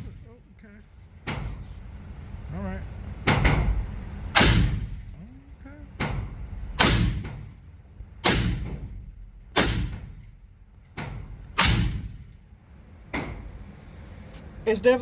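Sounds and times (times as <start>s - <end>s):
suppressed gunshots echoing: 4.4s - 5.0s, 6.8s - 7.6s, 8.2s - 10.5s, 11.2s - 12.2s.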